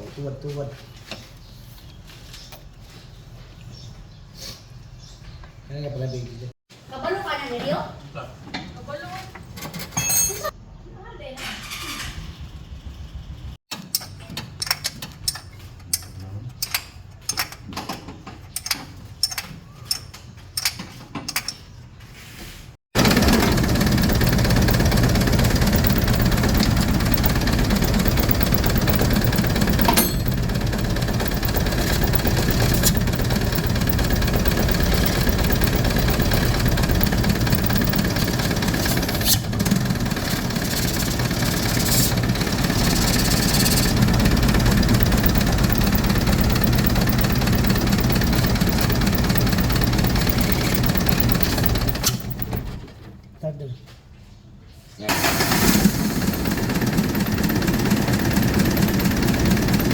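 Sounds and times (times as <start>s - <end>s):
diesel engine idling: 23.0s - 52.6s.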